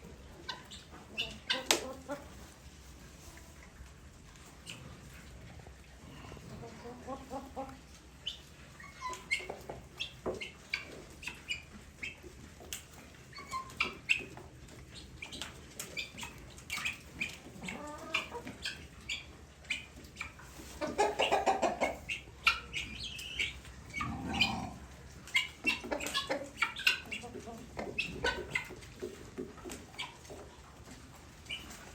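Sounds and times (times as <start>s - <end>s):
guineafowl harsh calls: 23.3s - 24.9s.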